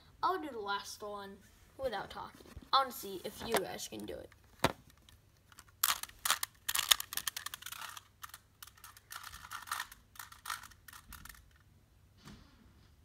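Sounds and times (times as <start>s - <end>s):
puzzle cube clicking and rattling: 3.5s - 11.6s.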